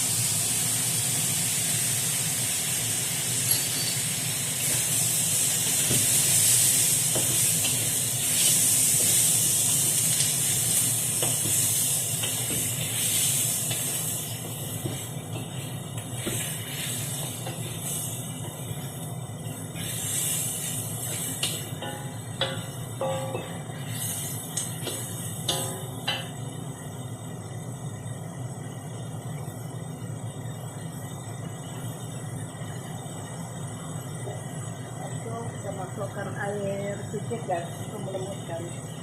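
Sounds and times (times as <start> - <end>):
meat sizzling in oil: 0.0 - 26.3.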